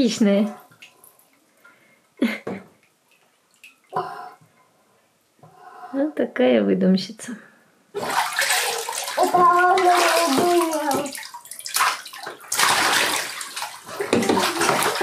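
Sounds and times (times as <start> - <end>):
bathwater splashing and sloshing: 0.0 - 1.9, 2.8 - 4.3, 8.0 - 15.0.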